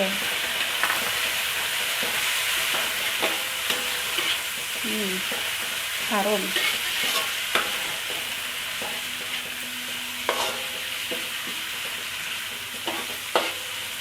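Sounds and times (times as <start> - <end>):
vegetables sizzling in hot oil: 0.0 - 14.0.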